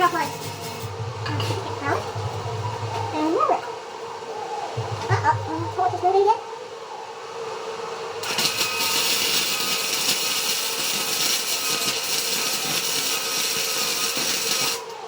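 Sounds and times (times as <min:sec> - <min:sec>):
welding arc crackling and hissing: 0:00.0 - 0:02.0, 0:08.2 - 0:15.0
welder hum: 0:00.0 - 0:03.1, 0:08.2 - 0:15.0.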